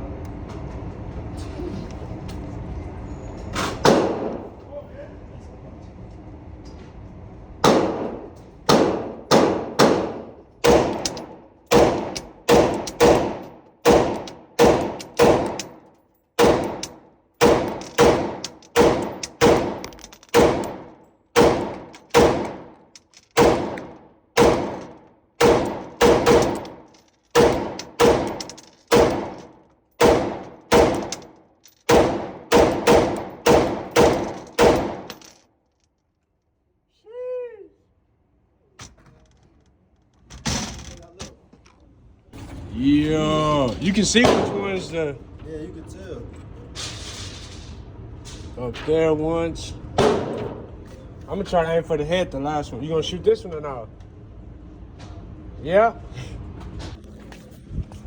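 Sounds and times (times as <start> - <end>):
gunshots: 3.8 - 4.4, 7.6 - 15.6, 16.4 - 22.8, 23.4 - 26.8, 27.4 - 31.2, 31.9 - 35.1, 44.2 - 44.9, 50.0 - 50.7.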